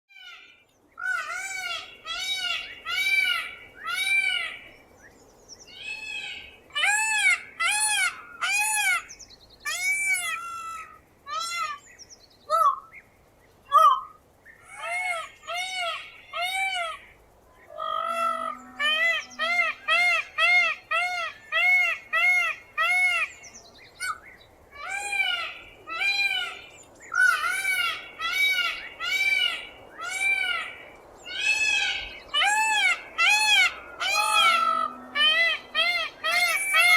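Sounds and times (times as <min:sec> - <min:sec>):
peacock screaming: 0:05.7 - 0:11.8, 0:17.7 - 0:23.4, 0:24.8 - 0:36.9.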